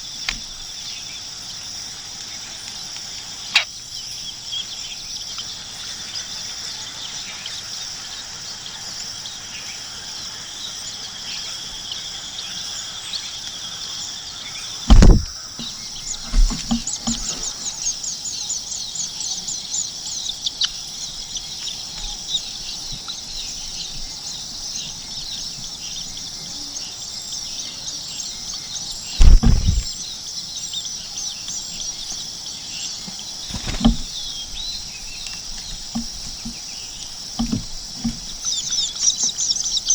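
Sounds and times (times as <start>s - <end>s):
insect trill: 0.0s - 39.9s
nestling birds begging chirps: 0.0s - 39.9s
loud low thumps: 14.9s - 16.8s, 29.2s - 29.9s.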